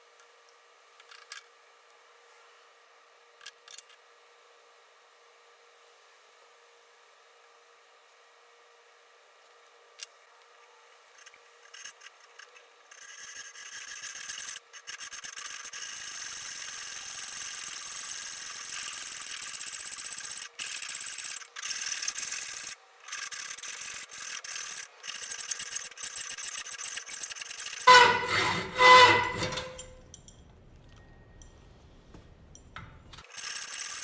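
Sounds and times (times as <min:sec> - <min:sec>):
abrasive scratching on metal parts: 0:11.1 - 0:29.9, 0:33.2 - 0:34.0.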